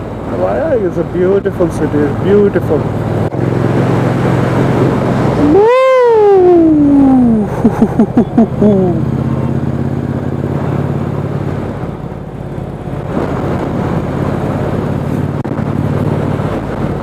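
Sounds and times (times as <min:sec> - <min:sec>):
motorcycle engine cruising: 0:00.0 - 0:17.0
wind noise rushing: 0:02.2 - 0:08.0, 0:10.5 - 0:17.0.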